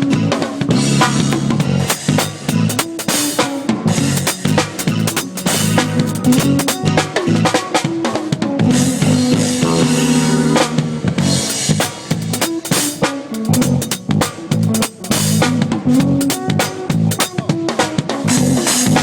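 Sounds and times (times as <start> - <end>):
live band playing: 1.0 - 19.0
kick and snare drum hits: 1.6 - 6.8, 11.5 - 17.4.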